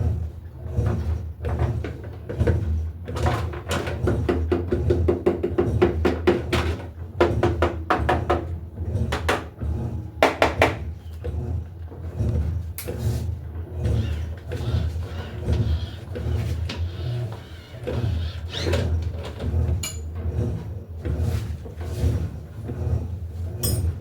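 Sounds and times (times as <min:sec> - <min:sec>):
washing machine motor hum: 0:02.5 - 0:24.0.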